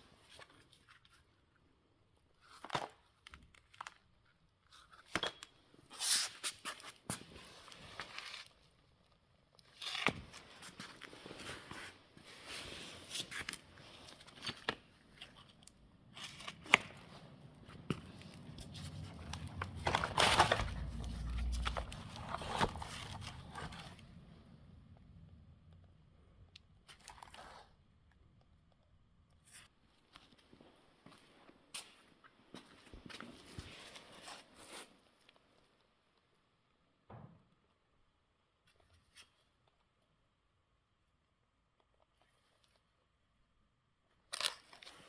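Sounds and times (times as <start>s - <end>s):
handling clicks and rustling: 13.1s - 24.4s.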